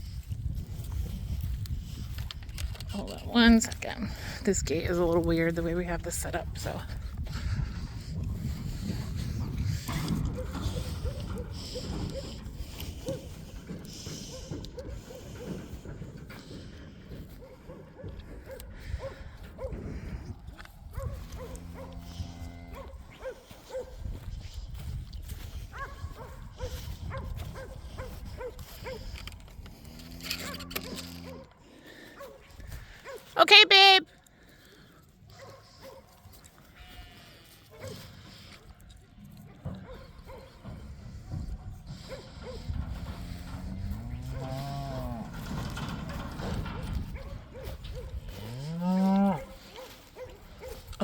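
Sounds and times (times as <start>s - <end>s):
cow mooing: 43.5s - 45.4s, 48.3s - 49.5s.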